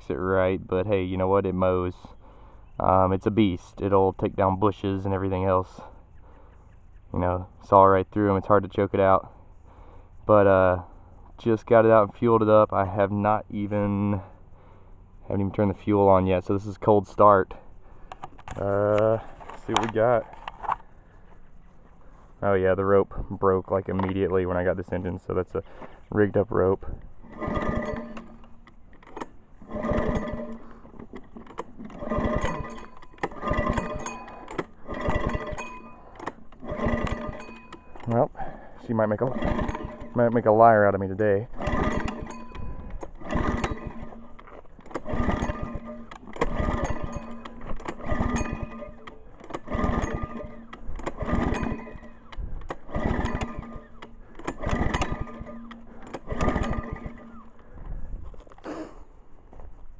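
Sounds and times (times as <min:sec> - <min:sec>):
recoil starter rope pulls: 0:00.0 - 0:06.5, 0:07.1 - 0:21.3, 0:22.0 - 0:59.8
engine turning over: 0:25.6 - 0:59.0.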